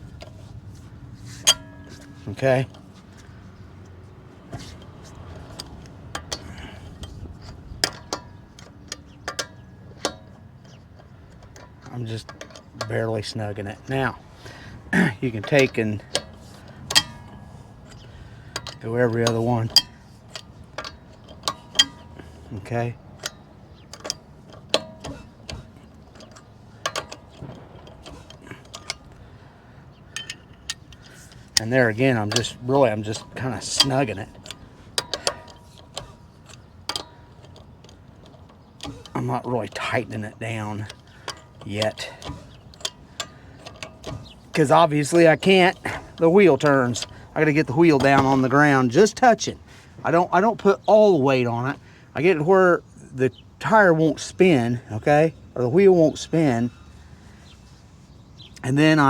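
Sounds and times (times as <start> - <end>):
socket ratchet clicking: 0.0 - 50.0
wrench clinking on lug nuts: 0.0 - 57.7, 58.3 - 59.0.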